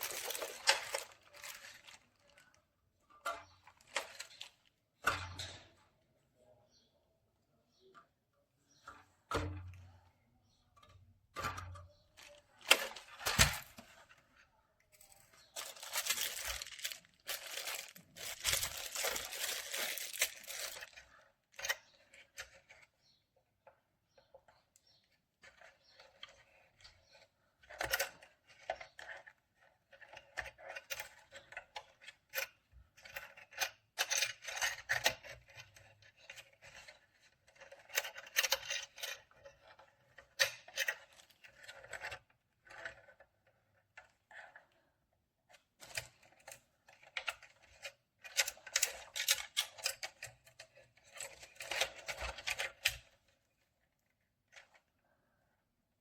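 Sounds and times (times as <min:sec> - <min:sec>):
small hard objects clicking: 0:15.6 - 0:21.1.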